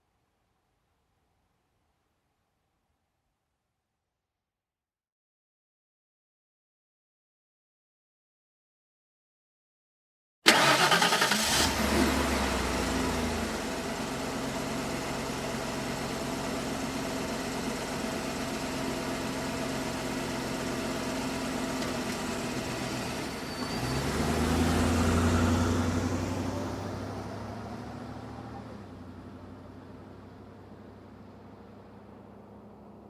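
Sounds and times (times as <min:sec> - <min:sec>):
car engine idling and revving: 0:10.5 - 0:33.0.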